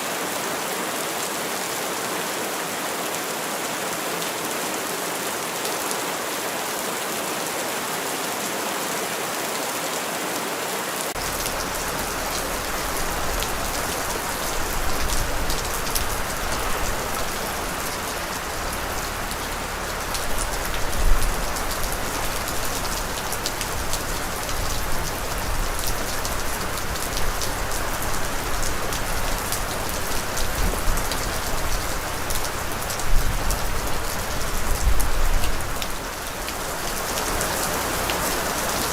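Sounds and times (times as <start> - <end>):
steady rain falling: 0.0 - 38.9
deep low rumble: 11.2 - 36.7.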